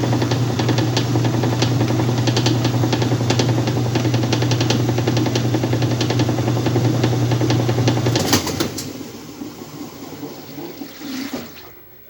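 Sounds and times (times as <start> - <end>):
washing machine click: 0.0 - 9.3
washing machine agitating: 0.0 - 12.0.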